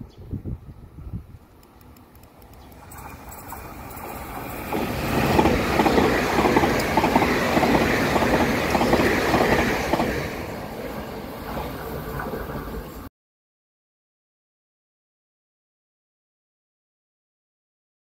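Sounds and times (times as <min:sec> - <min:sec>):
electric train passing: 0:00.5 - 0:13.1.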